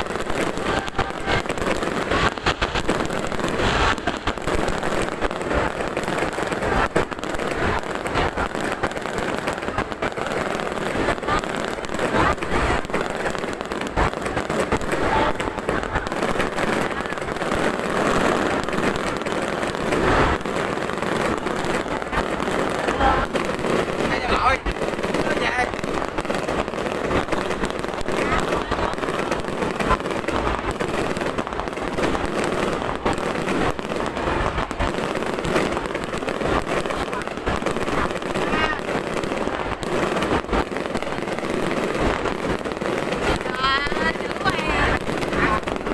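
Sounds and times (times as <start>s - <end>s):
fireworks cracking and popping: 0.0s - 45.9s
continuous din: 42.2s - 45.9s.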